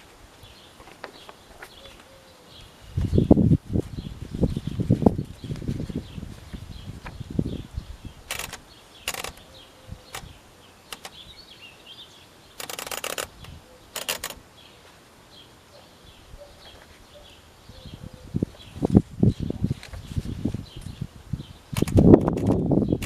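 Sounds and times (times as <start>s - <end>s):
birds chirping faintly: 0.0s - 23.0s
typewriter clicking: 8.3s - 9.4s, 10.9s - 11.2s, 12.6s - 14.4s, 21.8s - 22.6s.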